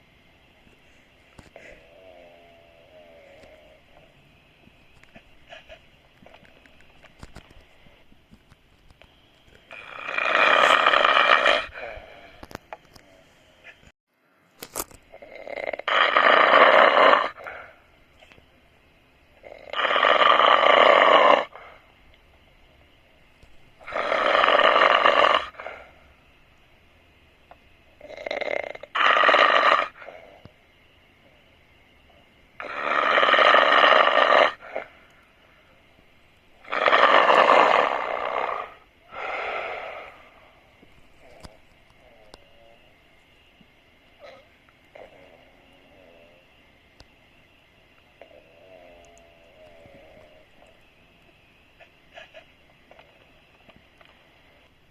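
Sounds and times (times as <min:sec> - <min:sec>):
person snoring loudly: 0:09.7 - 0:12.4, 0:15.1 - 0:17.6, 0:23.8 - 0:25.8, 0:36.6 - 0:40.4
faint clicks: 0:49.0 - 0:54.8.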